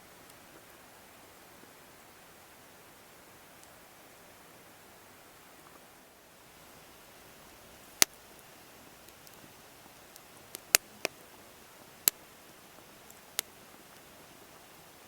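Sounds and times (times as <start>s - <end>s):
faint steady hiss: 0.0s - 15.0s
wood fire crackling: 6.3s - 15.0s.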